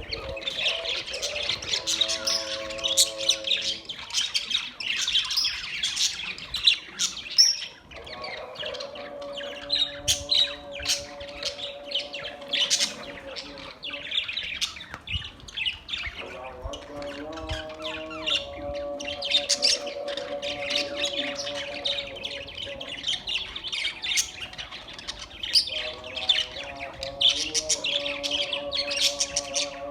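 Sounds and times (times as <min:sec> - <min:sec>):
budgerigars chirping and squawking: 0:00.0 - 0:29.9.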